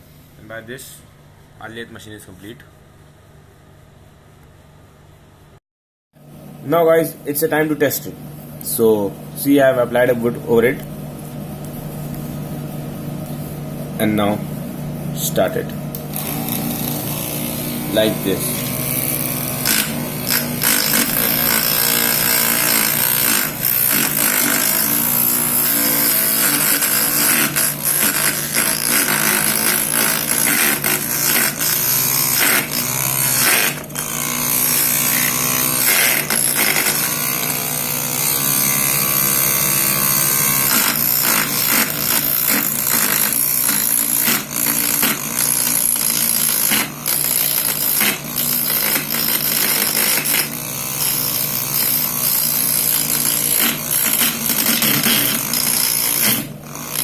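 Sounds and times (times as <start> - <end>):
lathe motor humming: 15.9 - 57.0.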